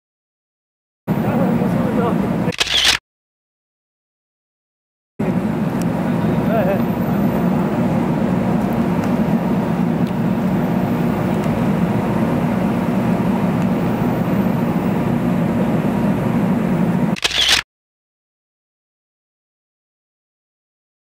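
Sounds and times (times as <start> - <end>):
moving vehicle rumble: 1.1 - 3.0, 5.2 - 17.6.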